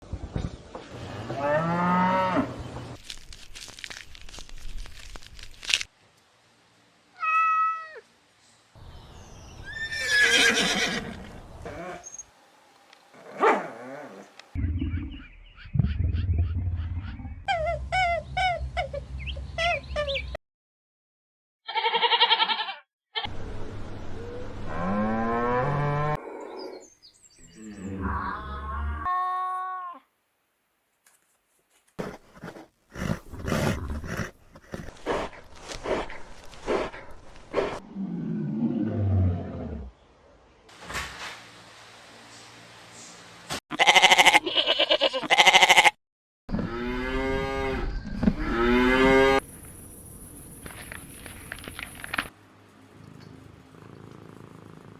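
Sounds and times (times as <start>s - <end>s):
quavering bleat: 21.7s - 23.3s, 43.7s - 46.0s
farm animals calling: 43.7s - 49.4s.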